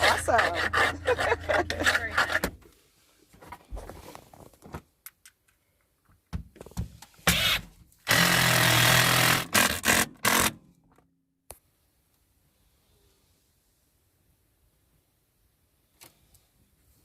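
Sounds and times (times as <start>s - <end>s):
handheld power tool running: 7.3s - 10.6s.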